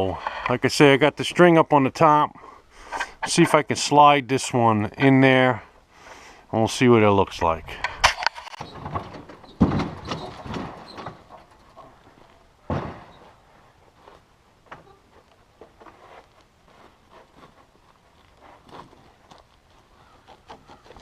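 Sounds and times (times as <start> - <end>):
log scraping on wood: 15.0 - 21.0.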